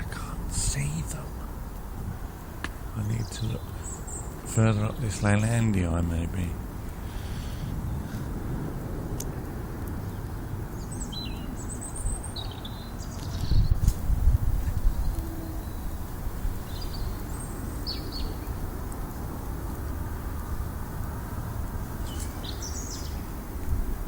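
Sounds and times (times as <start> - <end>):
small birds chirping: 0.0 - 8.3, 9.9 - 19.2, 21.9 - 23.4
steady low rumble: 0.0 - 11.0.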